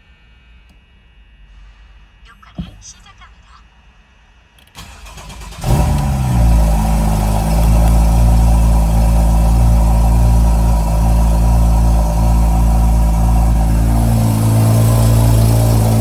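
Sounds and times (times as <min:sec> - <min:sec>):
starter motor cranking: 0:04.7 - 0:16.0
car engine revving and idling: 0:04.8 - 0:16.0.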